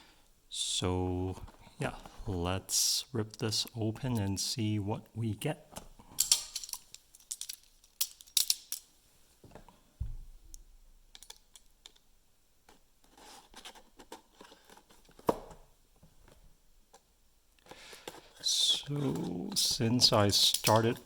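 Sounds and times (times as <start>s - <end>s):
dull thump: 10.0s - 10.5s.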